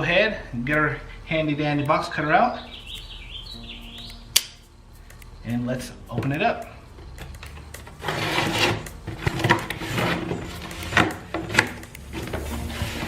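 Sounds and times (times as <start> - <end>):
box cutter slicing packing tape: 7.7 - 13.0.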